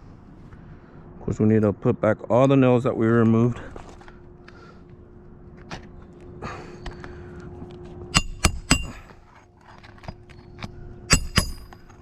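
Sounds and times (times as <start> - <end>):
hammer striking nails: 8.1 - 9.0, 11.1 - 11.9.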